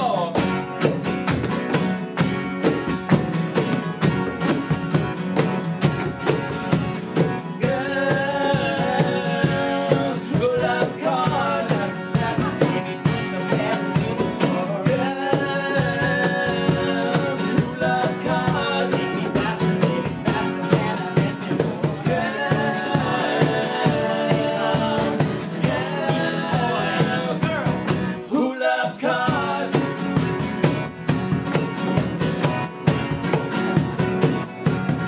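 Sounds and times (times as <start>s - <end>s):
steady drumbeat: 0.0s - 28.2s, 29.2s - 35.0s
electric guitar: 0.0s - 28.3s
bass: 0.0s - 35.0s
keyboard: 0.0s - 35.0s
lead vocal singing: 7.2s - 30.5s.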